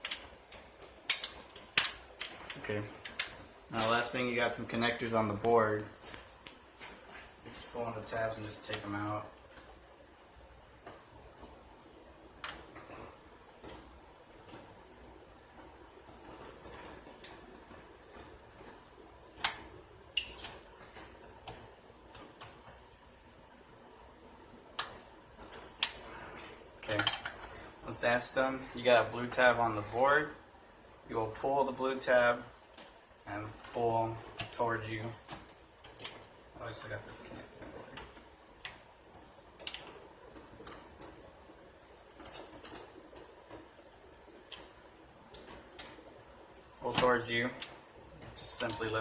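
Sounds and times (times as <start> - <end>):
cable connectors clicking: 0.0 - 4.0, 39.6 - 43.9
server parts clicking and rattling: 0.0 - 9.8, 24.0 - 30.2, 31.4 - 49.0.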